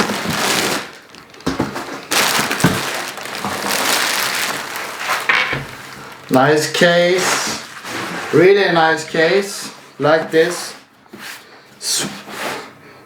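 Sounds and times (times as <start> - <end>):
packaging crinkling and rustling: 0.0 - 8.4.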